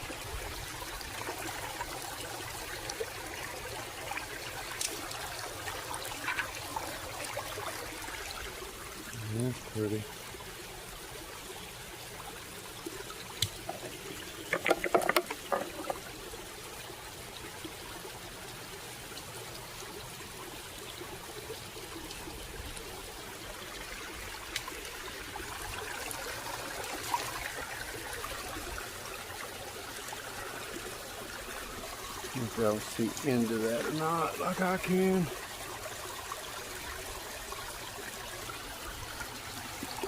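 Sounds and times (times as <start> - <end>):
water trickling: 0.0 - 40.0
sharp clicks and knocks: 13.4 - 16.0.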